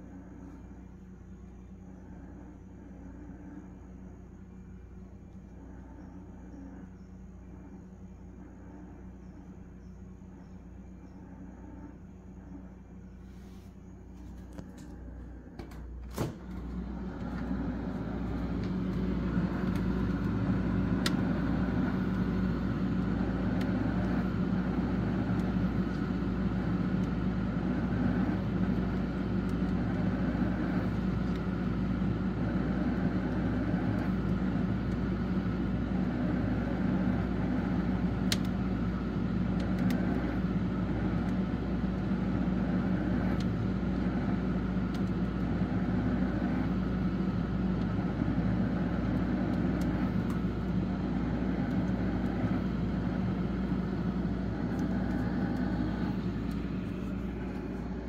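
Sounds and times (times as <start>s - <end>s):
motor grinding hum: 14.2s - 58.0s.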